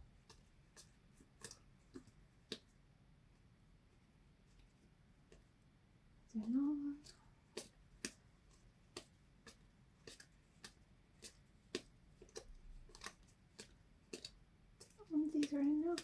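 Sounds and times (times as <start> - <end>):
cards clicking and tapping: 0.2 - 2.7, 6.4 - 16.0.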